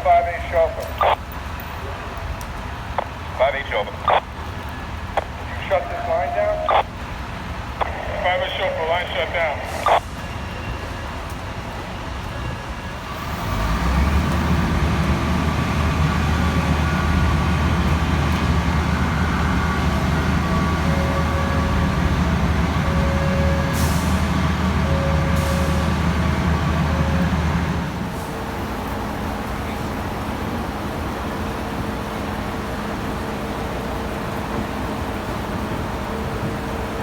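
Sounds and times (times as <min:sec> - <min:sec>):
diesel truck engine running: 0:13.2 - 0:37.0.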